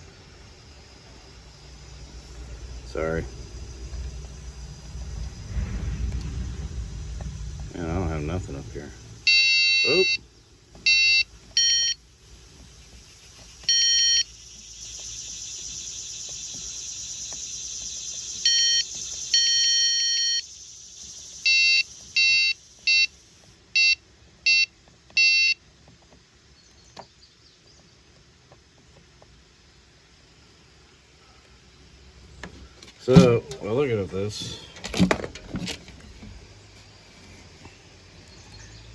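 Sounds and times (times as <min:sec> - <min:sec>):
steady hiss: 0:00.0 - 0:19.4
multimeter beeps: 0:09.3 - 0:10.2, 0:10.8 - 0:12.0, 0:13.7 - 0:14.3, 0:18.4 - 0:20.5, 0:21.4 - 0:23.2, 0:23.8 - 0:25.6.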